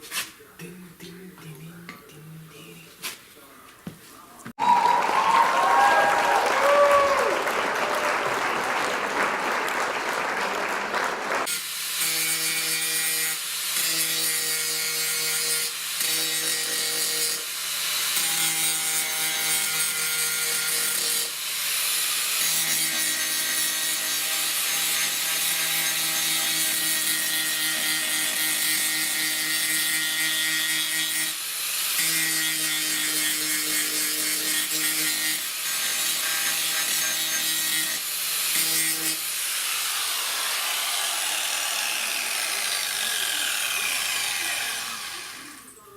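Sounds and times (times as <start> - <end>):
power sander humming: 39.4 - 45.6.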